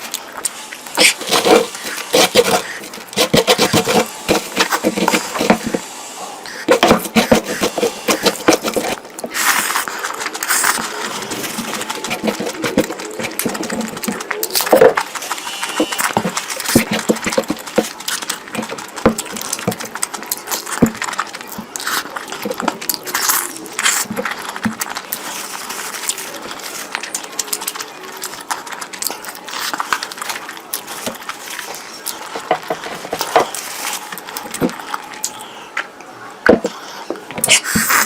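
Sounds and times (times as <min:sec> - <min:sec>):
slurping: 0:00.0 - 0:35.6, 0:36.7 - 0:38.0
person chewing and smacking: 0:06.5 - 0:35.5
wet clicks and crackles: 0:09.0 - 0:36.0.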